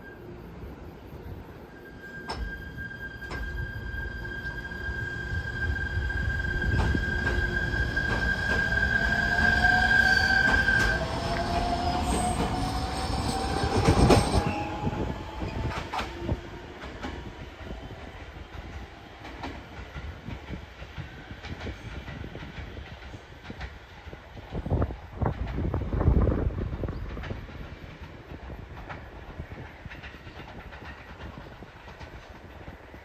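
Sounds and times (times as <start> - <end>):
train motor whine: 1.0 - 20.1.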